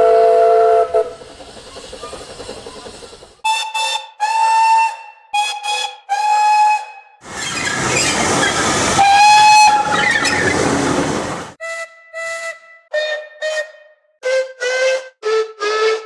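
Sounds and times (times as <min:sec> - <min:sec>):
steam locomotive whistle: 0:00.0 - 0:01.2, 0:03.4 - 0:11.0, 0:11.6 - 0:16.0
hissing steam: 0:00.0 - 0:04.4, 0:07.2 - 0:11.6
running train noise: 0:00.0 - 0:12.5.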